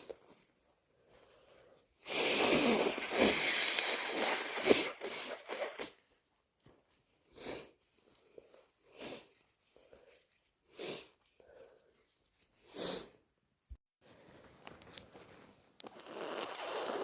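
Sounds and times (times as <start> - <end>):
congested sniffs: 2.0 - 6.0, 12.6 - 13.2
person blowing nose: 2.0 - 6.1, 7.4 - 7.7, 10.7 - 11.2, 12.6 - 13.2, 15.8 - 17.0.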